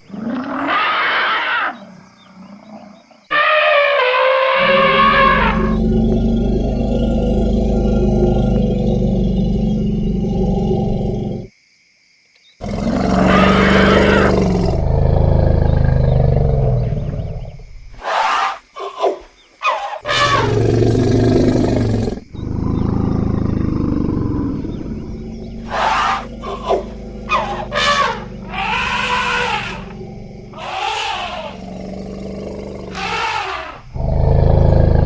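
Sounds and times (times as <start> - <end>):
elephants rumbling roars: 2.4 - 11.5, 12.6 - 17.5, 20.0 - 35.0
elephant trumpeting blasts: 3.3 - 5.8, 20.0 - 20.6, 25.6 - 31.6, 32.8 - 33.9.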